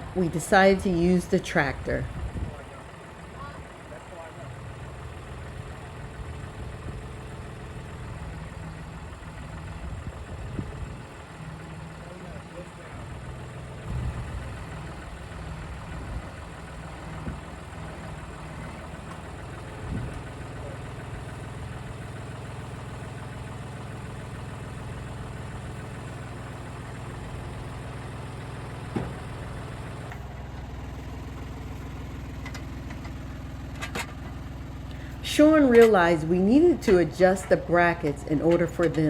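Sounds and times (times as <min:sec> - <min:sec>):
tractor engine idling: 0:00.0 - 0:39.0
short metal clanks: 0:32.4 - 0:34.4.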